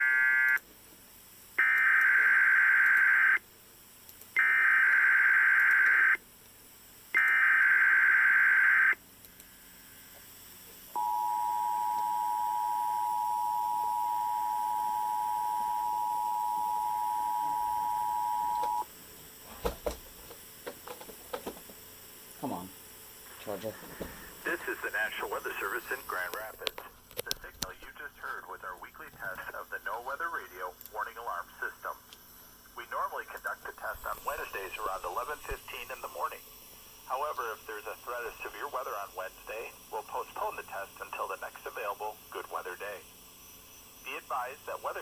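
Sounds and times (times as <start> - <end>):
steady warning alarm tone: 0.0 - 0.6, 1.6 - 3.4, 4.4 - 6.2, 7.2 - 9.0, 10.9 - 18.9.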